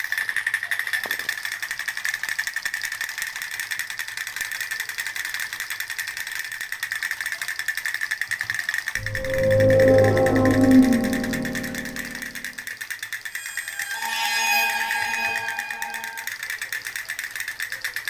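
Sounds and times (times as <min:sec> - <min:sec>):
toy motor rattling buzz: 0:01.8 - 0:08.8.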